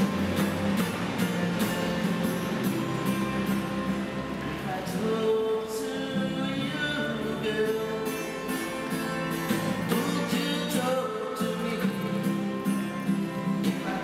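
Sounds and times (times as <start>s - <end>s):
acoustic guitar playing: 0.0s - 14.0s
person singing: 4.5s - 8.5s, 9.9s - 12.5s.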